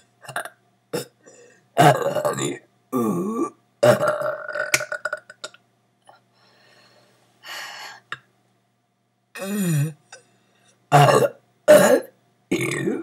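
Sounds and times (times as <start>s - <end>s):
crackly burp: 0.2s - 1.2s, 1.8s - 5.6s, 10.9s - 13.0s.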